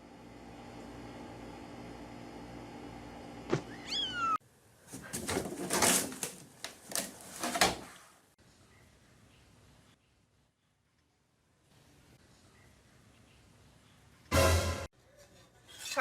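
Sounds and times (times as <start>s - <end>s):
cat meowing: 3.6s - 4.4s
cat harsh cries: 3.7s - 4.4s.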